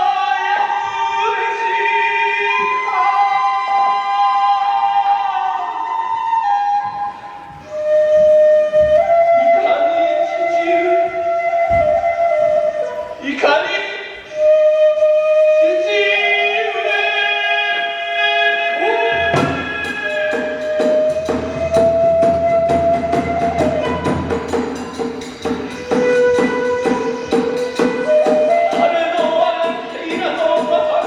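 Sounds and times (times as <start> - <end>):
bamboo flute long notes: 0.0 - 31.0
drum fast beat: 19.3 - 31.0
hand cymbals: 22.9 - 28.7.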